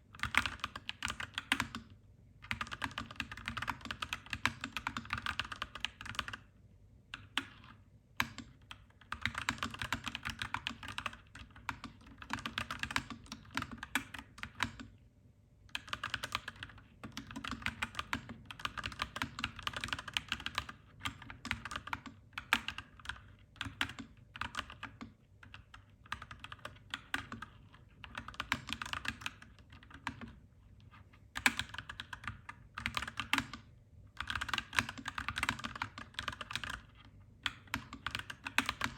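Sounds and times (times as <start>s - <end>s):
mechanical keyboard typing: 0.1s - 6.5s, 7.1s - 14.9s, 15.7s - 38.9s.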